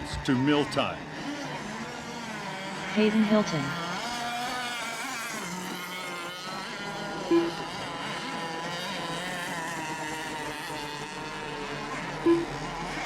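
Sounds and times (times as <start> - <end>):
model boat engines whining: 0.0 - 13.0
short loud beeps: 7.3 - 7.6, 12.3 - 12.6.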